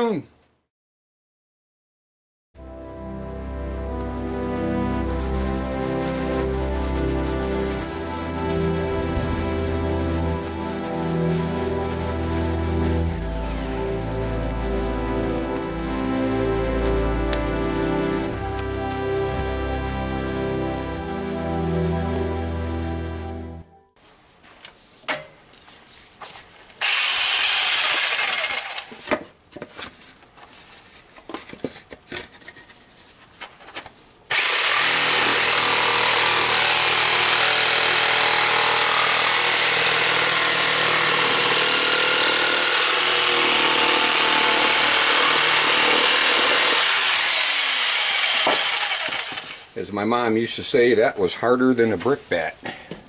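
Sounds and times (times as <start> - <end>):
saber saw cutting wood: 4.3 - 19.2, 26.8 - 29.1, 34.3 - 49.8.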